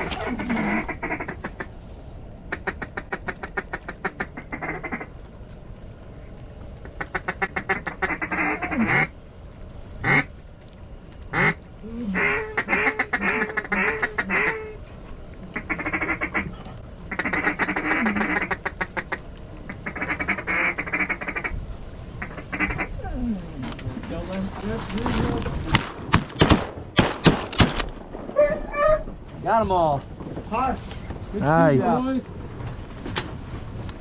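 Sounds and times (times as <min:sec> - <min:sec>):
duck quacking: 0:00.0 - 0:01.7, 0:02.5 - 0:05.1, 0:06.9 - 0:09.1, 0:11.3 - 0:14.8, 0:15.5 - 0:21.5, 0:22.2 - 0:23.0
rapid chattering clucks: 0:00.0 - 0:01.7, 0:22.2 - 0:22.9.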